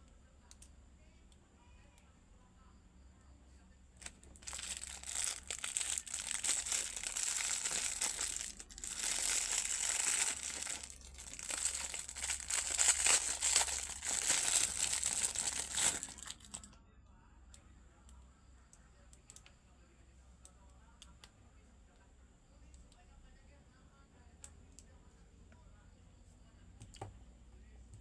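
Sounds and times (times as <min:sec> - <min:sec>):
plastic packaging crinkling: 0:04.0 - 0:16.7.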